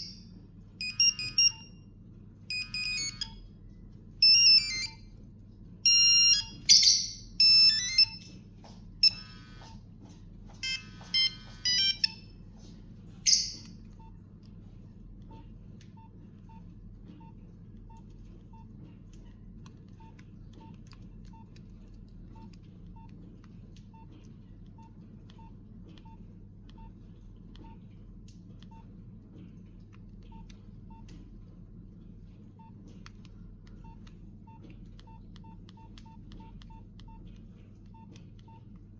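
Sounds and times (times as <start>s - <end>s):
phone ringtone beeping melody: 0.8s - 1.7s, 2.5s - 3.4s, 4.2s - 5.0s, 5.8s - 8.2s, 9.0s - 9.7s, 10.6s - 12.2s.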